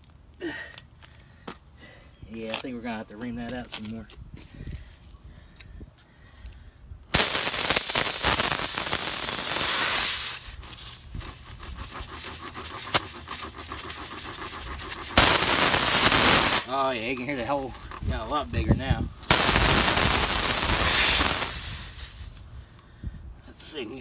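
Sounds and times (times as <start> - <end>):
air hissing from tire: 7.1 - 22.5
reamer scraping: 7.2 - 22.4.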